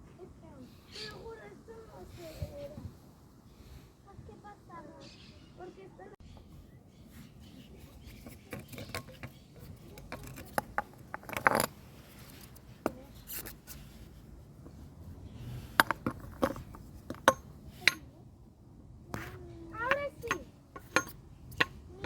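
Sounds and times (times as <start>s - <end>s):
hard objects clinking and knocking: 8.1s - 13.6s, 15.6s - 18.1s, 19.2s - 21.9s.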